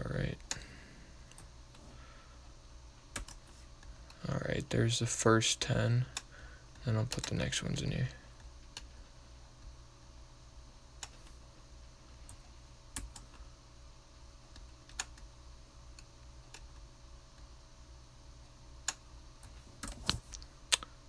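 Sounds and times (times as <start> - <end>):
faint steady hum: 0.0 - 21.0
computer keyboard clicks: 3.2 - 3.4, 14.6 - 15.3.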